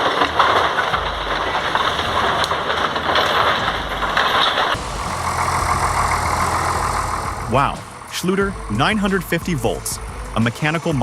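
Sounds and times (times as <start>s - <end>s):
heavy vehicle engine rumbling: 0.0s - 11.0s
engine idling: 3.8s - 11.0s.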